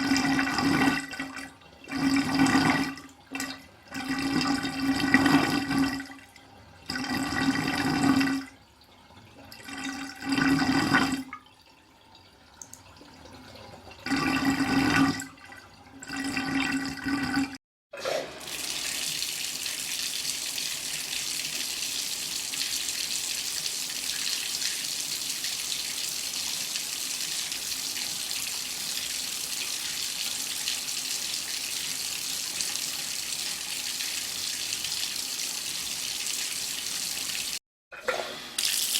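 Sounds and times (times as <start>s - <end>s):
water gushing in bursts: 18.4s - 37.6s.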